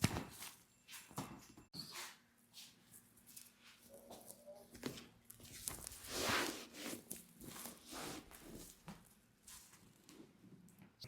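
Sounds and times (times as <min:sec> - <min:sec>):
hands and cloth rustling: 0:02.6 - 0:09.8.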